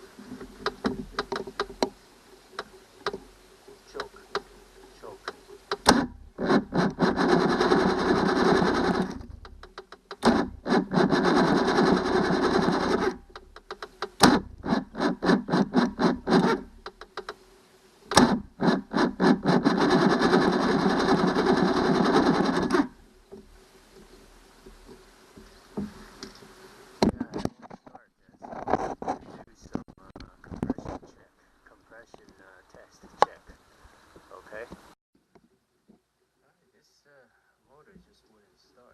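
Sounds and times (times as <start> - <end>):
outboard engine cranking: 0.0 - 17.4, 18.1 - 27.0.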